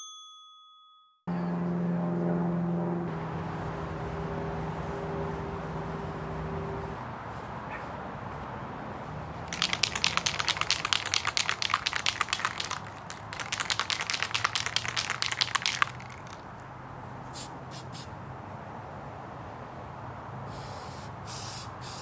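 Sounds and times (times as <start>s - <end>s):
spray can ball rattling: 9.5s - 16.7s, 17.4s - 18.0s.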